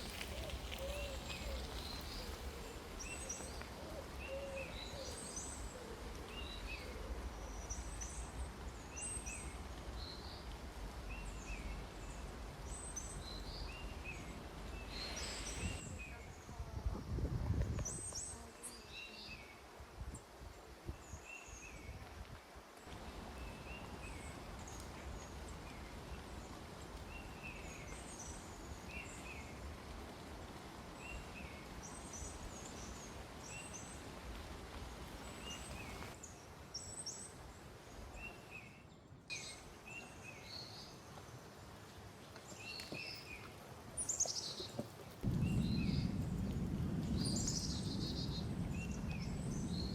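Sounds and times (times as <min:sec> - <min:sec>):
small birds chirping: 0:00.0 - 0:16.8, 0:34.8 - 0:49.9
low outdoor background noise: 0:00.0 - 0:49.9.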